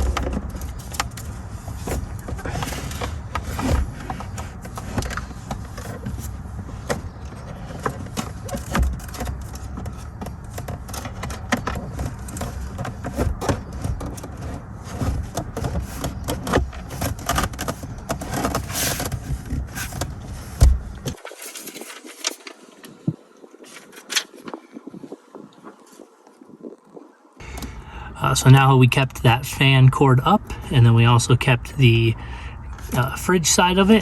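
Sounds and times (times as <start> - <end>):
plastic knocks and scrapes: 0.0 - 24.6.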